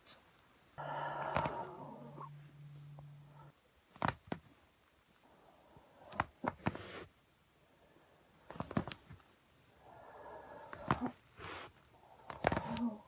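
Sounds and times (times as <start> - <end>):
back joints cracking: 1.0 - 2.3, 3.3 - 4.6, 6.0 - 7.1, 8.5 - 9.3, 10.6 - 13.0.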